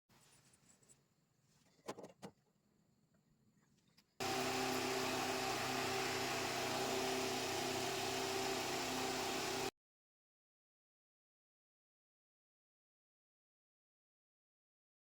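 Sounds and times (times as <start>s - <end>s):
machine running with hum: 4.2s - 9.7s.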